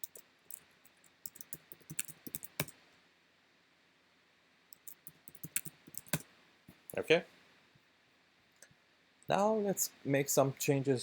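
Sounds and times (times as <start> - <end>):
computer keyboard keys clicking: 1.3 - 2.7, 4.8 - 6.2.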